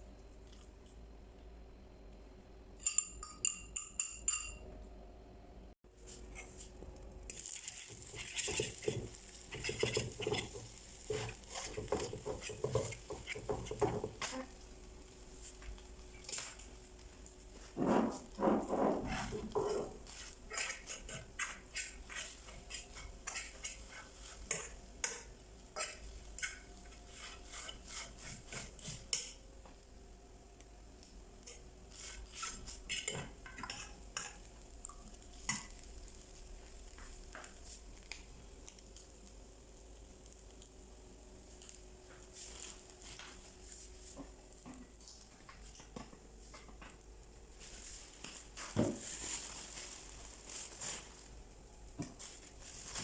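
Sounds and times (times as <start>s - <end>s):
dishes and cutlery clinking: 2.8s - 4.6s.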